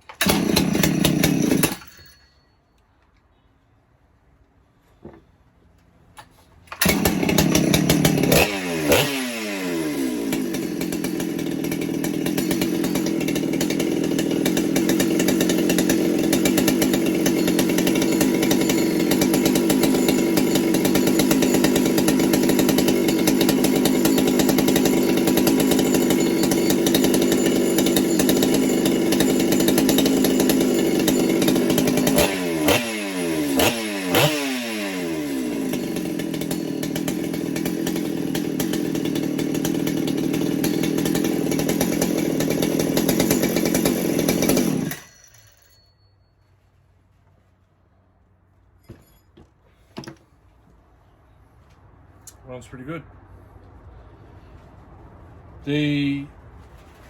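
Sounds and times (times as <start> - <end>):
chainsaw engine revving: 0.0 - 2.1, 6.7 - 45.6.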